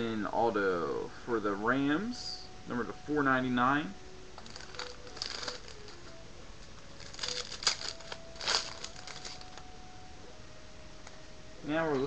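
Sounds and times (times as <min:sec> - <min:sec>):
card wrappers crinkling: 0:04.4 - 0:06.2, 0:06.8 - 0:09.7.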